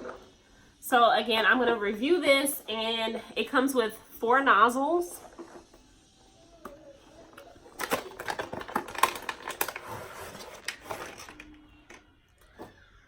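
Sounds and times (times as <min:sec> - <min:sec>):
plastic parts clicking and rattling: 0:06.6 - 0:12.8.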